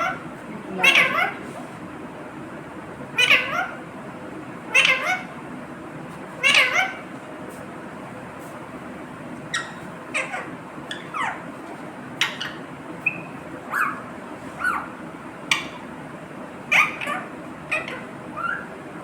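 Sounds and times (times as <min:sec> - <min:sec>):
parrot shrill calls: 0:00.0 - 0:00.2, 0:00.8 - 0:01.4, 0:03.2 - 0:03.8, 0:04.7 - 0:05.4, 0:06.4 - 0:07.1, 0:09.5 - 0:11.4, 0:12.2 - 0:14.9, 0:16.7 - 0:18.7.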